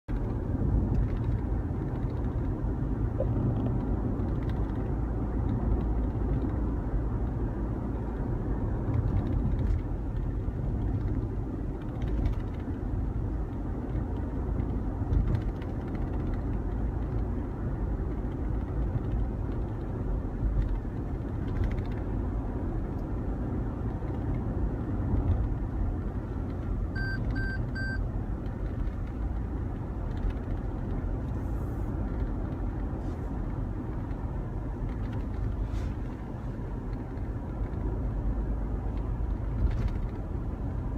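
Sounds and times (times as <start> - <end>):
car cabin low rumble: 0.1 - 40.9
short electronic beeps: 27.0 - 28.0.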